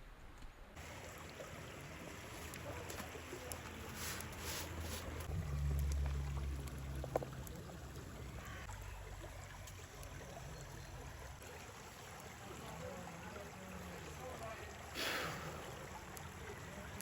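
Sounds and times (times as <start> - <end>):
flowing river water: 0.7 - 17.0
low rumble: 5.3 - 8.4.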